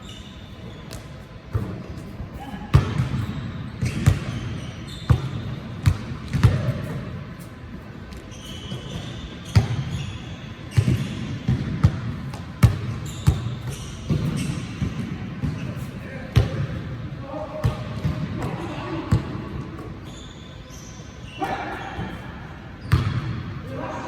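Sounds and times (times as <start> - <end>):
basketball bouncing on hard court: 2.7 - 7.1, 8.9 - 10.0, 10.7 - 16.8, 22.8 - 23.4.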